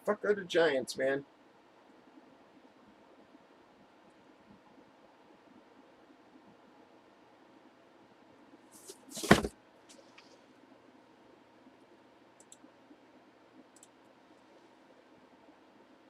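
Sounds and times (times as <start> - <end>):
faint clicks: 12.4 - 14.5.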